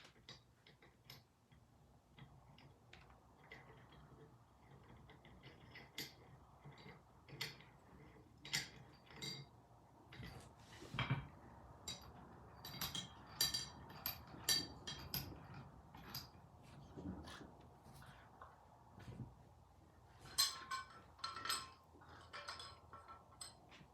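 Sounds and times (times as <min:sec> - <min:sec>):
steel parts clinking: 0:11.8 - 0:16.4, 0:20.2 - 0:23.9.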